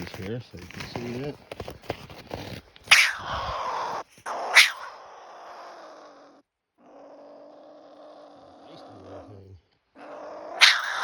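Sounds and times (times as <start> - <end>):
marten sharp outbursts: 2.9 - 5.0, 10.6 - 11.0
marten low growl: 6.8 - 11.0.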